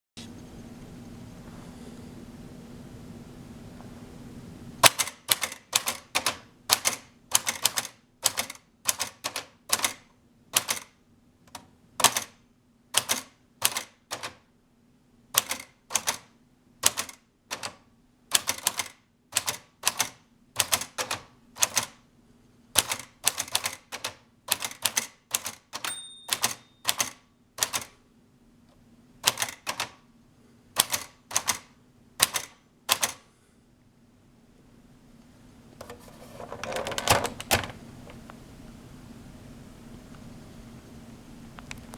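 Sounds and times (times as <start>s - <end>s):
toy typewriter key strikes: 4.8s - 10.0s, 10.6s - 10.9s, 11.5s - 12.4s, 13.0s - 14.4s, 15.4s - 22.0s, 22.8s - 27.9s, 29.2s - 29.9s, 30.8s - 33.2s
typewriter bell ringing: 25.8s - 27.2s.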